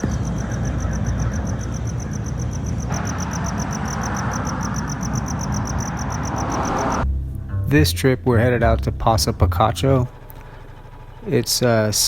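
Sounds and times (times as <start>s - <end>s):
cricket chirping: 0.0s - 7.0s
steady rushing rumbling noise: 0.0s - 12.0s.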